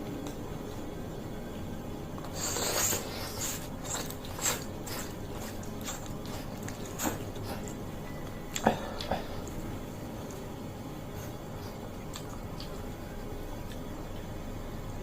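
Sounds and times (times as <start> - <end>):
noisy slurp: 2.2 - 7.8
chewing smacks: 3.8 - 7.8, 11.6 - 12.9.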